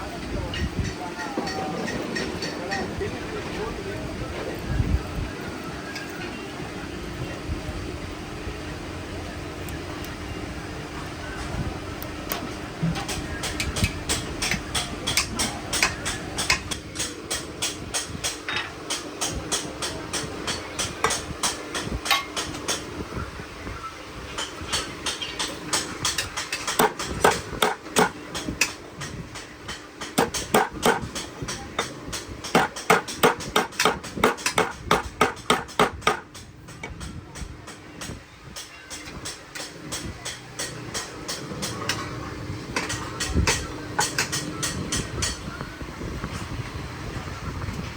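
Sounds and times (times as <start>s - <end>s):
hammer striking metal: 25.7s - 28.2s, 30.1s - 36.2s.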